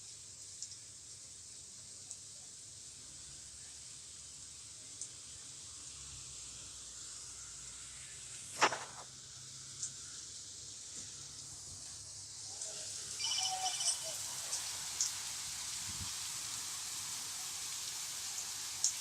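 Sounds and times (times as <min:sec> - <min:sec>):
heavy rain hissing: 0:02.4 - 0:19.0
sharp knock: 0:08.6 - 0:09.0
brief high chirping: 0:13.2 - 0:14.3.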